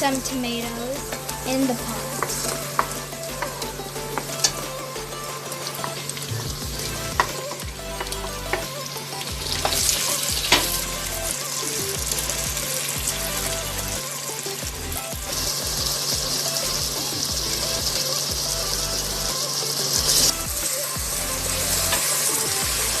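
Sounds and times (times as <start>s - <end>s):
onions sizzling in oil: 15.4s - 23.0s.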